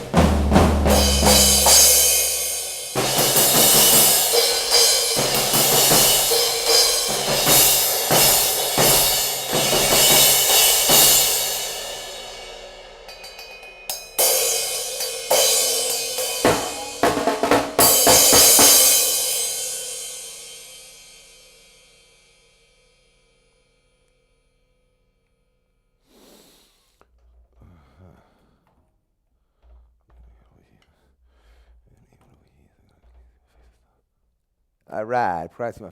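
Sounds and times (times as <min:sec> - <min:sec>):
drum kit playing: 0:00.0 - 0:21.8
cymbal crash ringing: 0:00.0 - 0:24.5.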